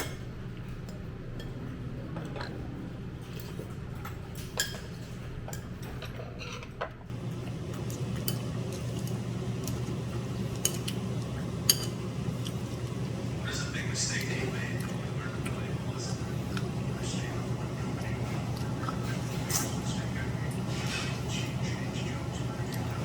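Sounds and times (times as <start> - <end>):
low hum of room noise: 0.0 - 23.0
chopsticks and dishes clinking: 4.4 - 23.0.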